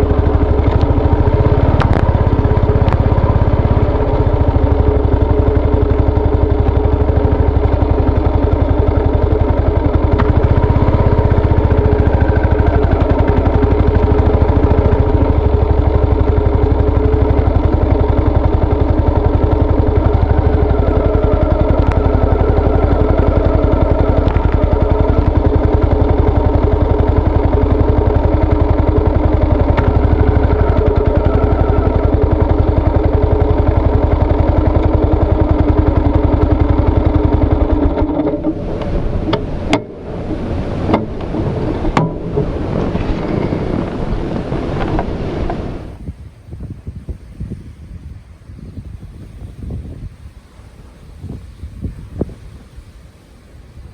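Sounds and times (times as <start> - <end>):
low rumbling noise: 0.0 - 53.9
motorcycle engine running: 0.0 - 53.9.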